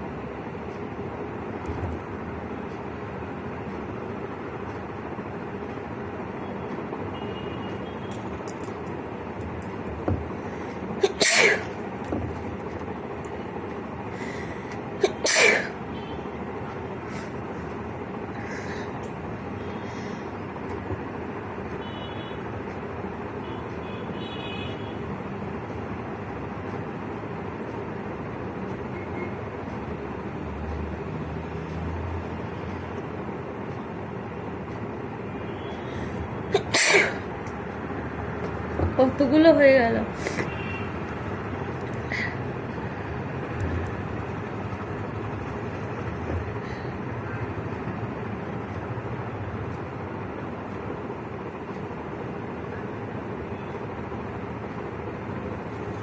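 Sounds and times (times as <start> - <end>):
steady background hum: 0.0 - 56.0
person sneezing: 11.0 - 11.7, 15.0 - 15.8, 17.1 - 17.3, 18.4 - 18.9, 36.5 - 37.3, 40.2 - 40.6.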